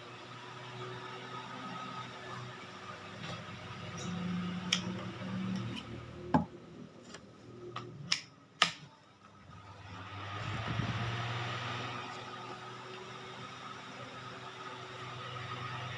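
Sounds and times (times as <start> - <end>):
electric fan whirring: 0.0 - 15.9.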